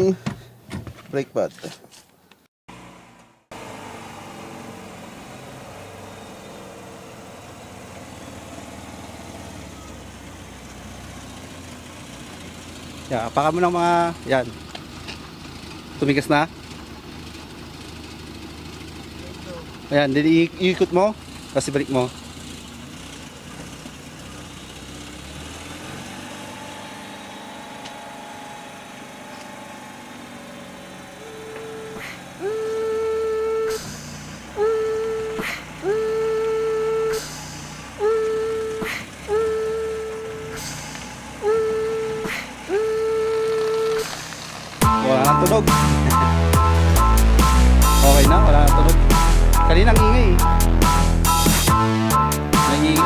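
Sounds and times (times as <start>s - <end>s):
rotary engine idling: 9.6s - 25.3s, 30.2s - 53.0s.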